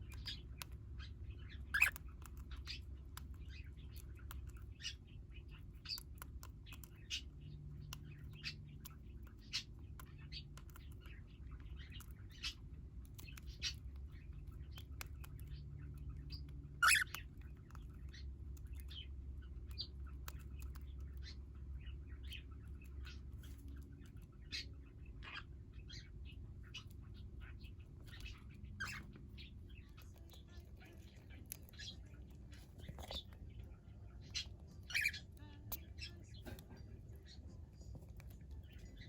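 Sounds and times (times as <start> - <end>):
birds chirping: 0.0 - 39.0
steady low hum: 0.0 - 39.0
parrots chirping: 0.1 - 2.8, 16.2 - 17.9, 24.5 - 30.1, 34.1 - 36.1.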